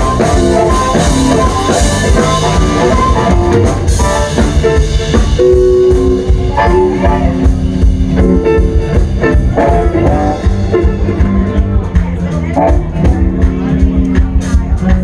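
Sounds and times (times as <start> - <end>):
lead line of bending notes: 0.0 - 11.7
drum and bass groove: 0.0 - 15.0
electric blues band playing: 0.0 - 15.0.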